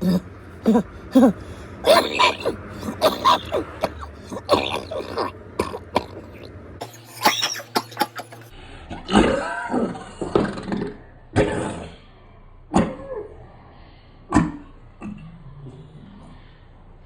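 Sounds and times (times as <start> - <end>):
cough-like vocal bursts: 0.0 - 8.5.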